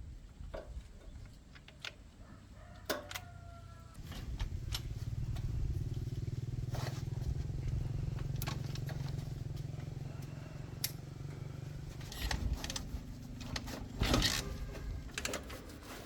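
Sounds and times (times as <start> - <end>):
small engine running: 4.0 - 15.6.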